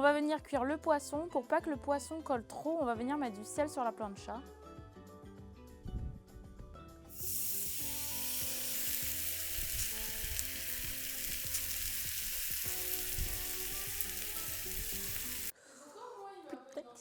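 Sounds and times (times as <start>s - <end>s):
fish sizzling on a griddle: 7.1s - 15.5s.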